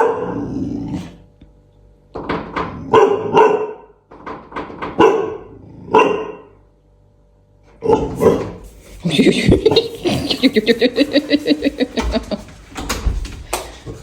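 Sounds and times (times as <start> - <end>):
dog barking: 0.0 - 0.4, 2.9 - 4.0, 5.0 - 6.6, 7.8 - 8.6.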